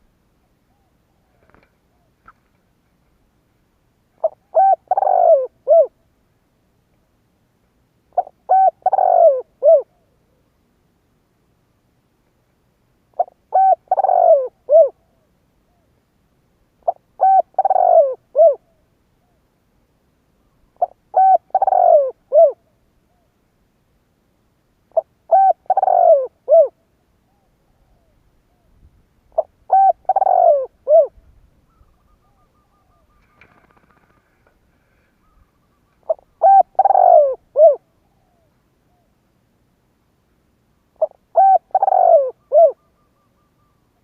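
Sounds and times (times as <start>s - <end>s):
dove cooing: 4.2s - 6.0s, 8.1s - 10.4s, 13.1s - 15.9s, 16.8s - 19.4s, 20.8s - 23.3s, 24.9s - 28.7s, 29.3s - 39.1s, 41.0s - 44.0s.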